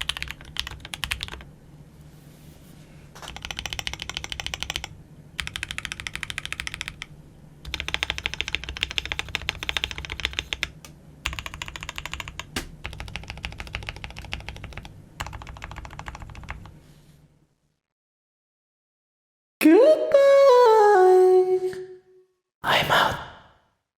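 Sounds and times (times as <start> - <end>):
mechanical keyboard typing: 0.0 - 1.5, 3.2 - 16.8.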